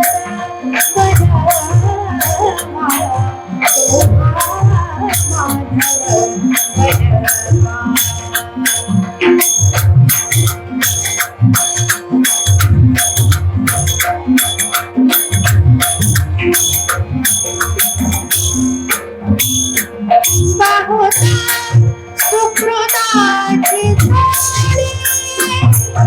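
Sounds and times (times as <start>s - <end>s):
sustained held notes: 20.8s - 26.0s
drum beat: 23.0s - 26.0s.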